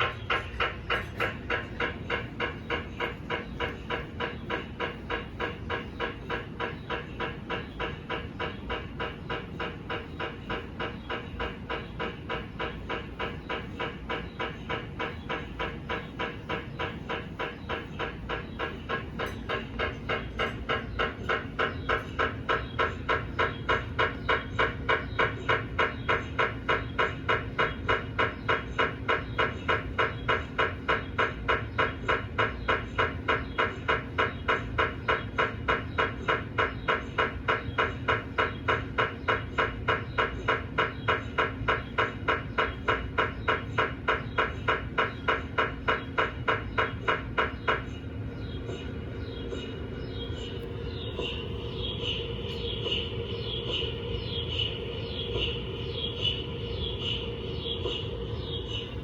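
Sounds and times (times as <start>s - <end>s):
mri scanner knocking: 0.0s - 59.0s
steady hum: 34.8s - 59.0s.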